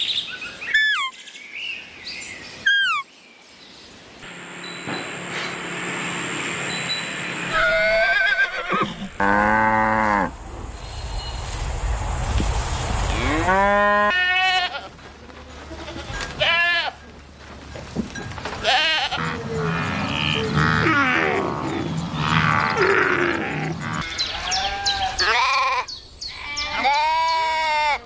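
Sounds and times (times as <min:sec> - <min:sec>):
rustling: 0:09.0 - 0:19.2
sheep bleating: 0:13.3 - 0:15.0.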